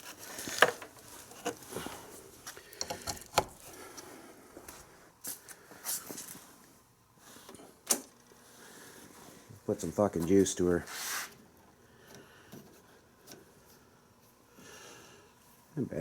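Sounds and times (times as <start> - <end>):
objects being handled: 0.0 - 6.4.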